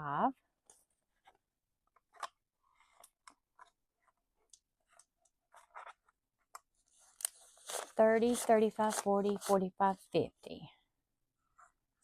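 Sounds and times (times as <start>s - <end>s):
paper banknotes rustling: 7.0s - 9.6s.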